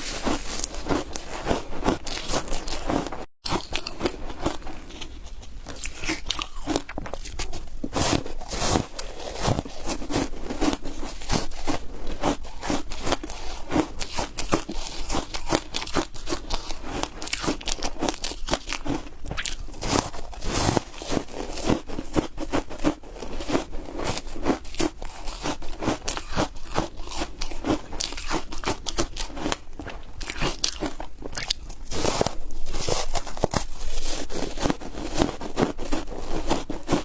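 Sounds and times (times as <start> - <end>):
ice being chewed: 0.0 - 37.0.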